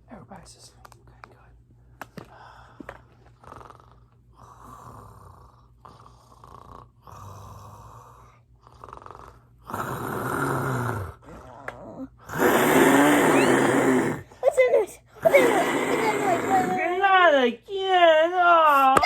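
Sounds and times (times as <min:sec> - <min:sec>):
person mimicking snoring: 0:03.4 - 0:17.0.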